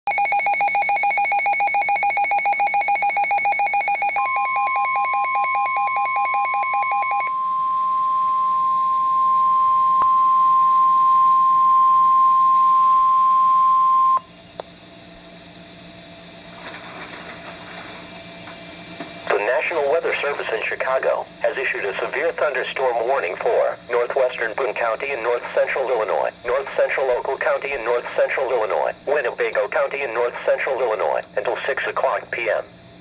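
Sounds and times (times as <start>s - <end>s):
steady warning alert tone: 0.1s - 7.5s, 19.3s - 31.1s
rapid electronic beeping alarm: 0.1s - 7.8s, 19.3s - 23.2s
faint radio hiss: 19.3s - 32.7s.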